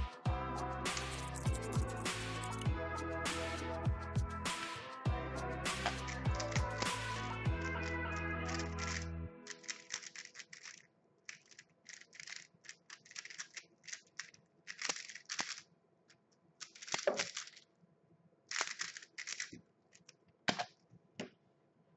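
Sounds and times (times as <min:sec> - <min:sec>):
puzzle cube clicking and rasping: 0:01.0 - 0:02.7, 0:07.6 - 0:17.7, 0:18.5 - 0:20.2.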